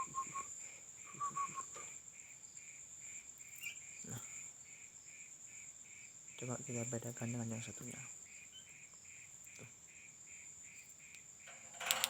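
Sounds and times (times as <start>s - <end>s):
bird chirping: 0.0s - 4.2s, 8.2s - 12.0s
crickets chirping: 0.0s - 12.0s.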